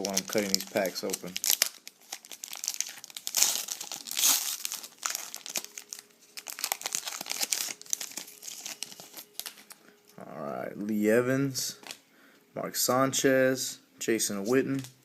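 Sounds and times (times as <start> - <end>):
wrapper crinkling: 0.0 - 9.9.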